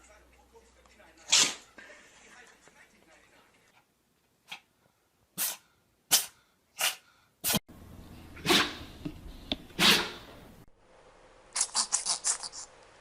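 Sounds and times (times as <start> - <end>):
dog sneezing: 1.3 - 1.7, 5.4 - 7.6, 8.4 - 8.8, 9.8 - 10.3.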